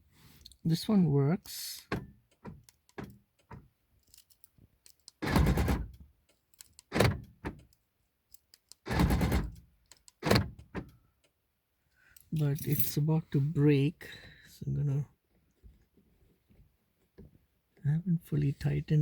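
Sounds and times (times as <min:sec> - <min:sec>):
light clicks and rattles: 0:01.4 - 0:05.2.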